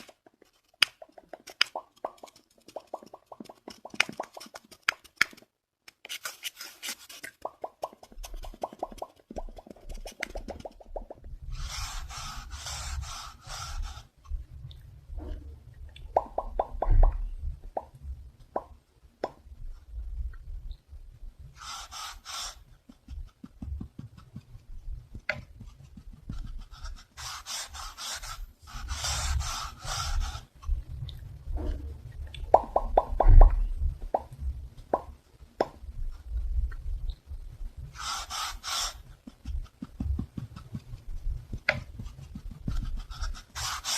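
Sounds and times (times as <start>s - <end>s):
sharp popping clicks: 0.0s - 6.0s, 15.9s - 19.4s, 32.2s - 35.9s
scratching on a surface: 0.0s - 14.4s, 21.5s - 31.0s, 37.8s - 43.9s
low thumps: 14.3s - 21.1s, 30.6s - 38.0s.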